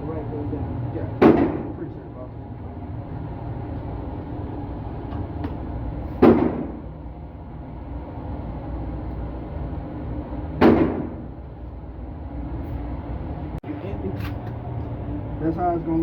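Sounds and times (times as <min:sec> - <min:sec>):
gunshots: 0:01.2 - 0:01.8, 0:06.2 - 0:06.8, 0:10.6 - 0:11.2.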